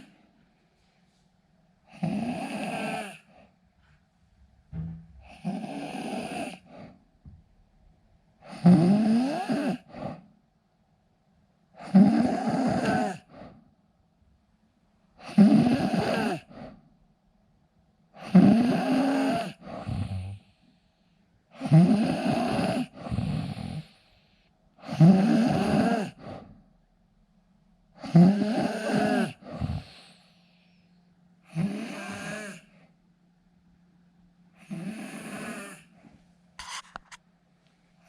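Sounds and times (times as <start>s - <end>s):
man snoring loudly: 1.9s - 3.3s, 5.4s - 6.7s, 8.5s - 10.0s, 11.8s - 13.3s, 15.2s - 16.5s, 18.2s - 20.4s, 21.6s - 23.9s, 24.8s - 26.2s, 28.0s - 30.0s, 31.5s - 32.7s, 34.6s - 35.9s.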